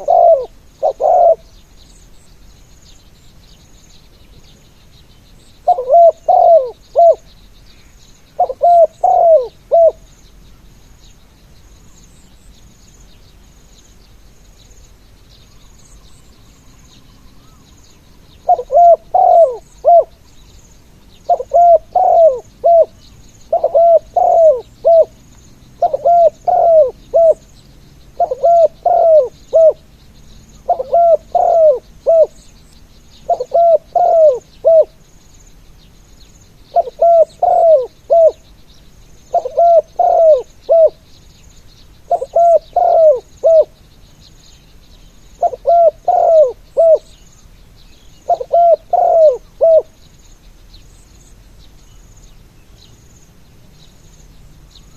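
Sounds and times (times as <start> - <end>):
dove cooing: 0.0 - 1.6, 5.6 - 7.3, 8.4 - 10.1, 18.4 - 20.2, 21.3 - 25.2, 25.8 - 27.5, 28.1 - 29.9, 30.6 - 32.4, 33.2 - 35.0, 36.7 - 38.4, 39.3 - 41.0, 42.1 - 43.8, 45.4 - 47.2, 48.3 - 50.0
faint high chirping: 0.0 - 54.9.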